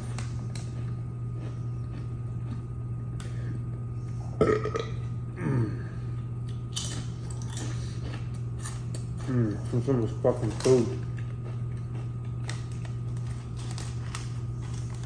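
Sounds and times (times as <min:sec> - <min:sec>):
man burping: 0:04.4 - 0:06.0.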